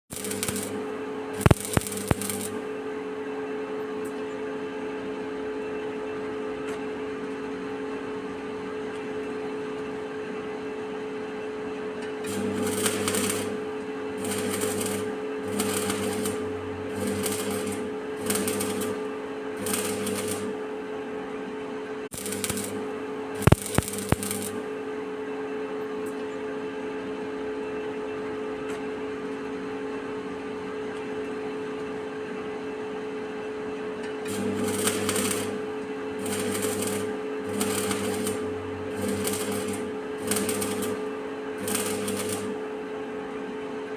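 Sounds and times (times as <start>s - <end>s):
welding arc crackle: 0.1s - 2.7s, 12.3s - 20.6s, 22.1s - 24.7s, 34.3s - 42.6s
welding machine humming: 0.1s - 3.0s, 12.2s - 21.0s, 22.0s - 25.0s, 34.2s - 43.0s.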